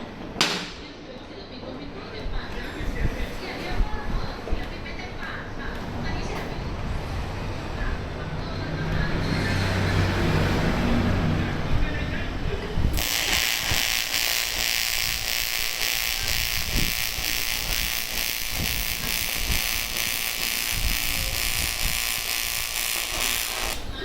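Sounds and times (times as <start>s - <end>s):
welding arc buzzing hiss: 13.0s - 24.0s.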